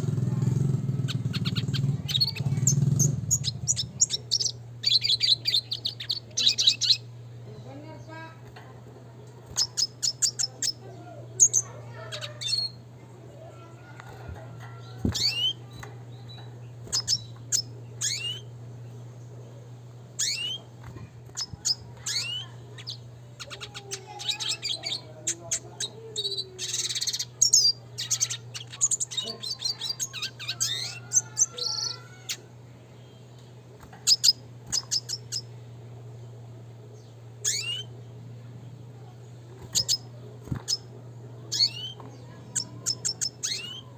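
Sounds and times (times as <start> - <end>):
steady low hum: 0.0 - 43.9
bird chirping and whistling: 1.1 - 7.0, 9.6 - 10.8, 15.0 - 15.7, 16.8 - 18.5, 20.2 - 20.7, 21.4 - 25.1, 25.8 - 32.4, 34.0 - 35.5, 37.4 - 37.9, 39.6 - 40.9, 41.5 - 43.9.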